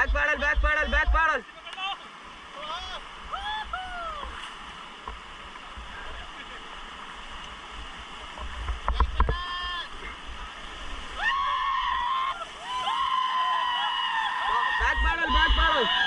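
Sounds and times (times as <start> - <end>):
rushing river rapids: 0.0 - 16.0
water splashes and knocks: 4.3 - 5.9, 8.3 - 9.5
people shouting: 11.1 - 16.0.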